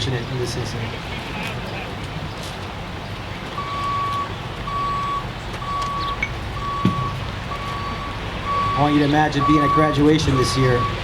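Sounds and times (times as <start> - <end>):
vehicle back-up alarm beeping: 3.5 - 11.0.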